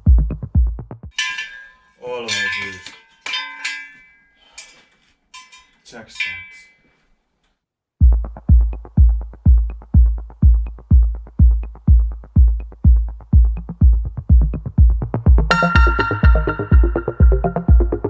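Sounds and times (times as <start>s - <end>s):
heavy kick drum beat: 0.0s - 1.1s, 8.0s - 18.0s
electronic dance music: 15.4s - 18.0s.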